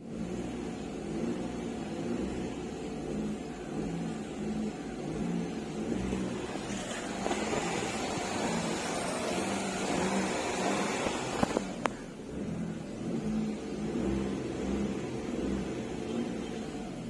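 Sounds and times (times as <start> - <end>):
car engine revving: 0.0 - 17.0
broad rushing noise: 5.6 - 11.8.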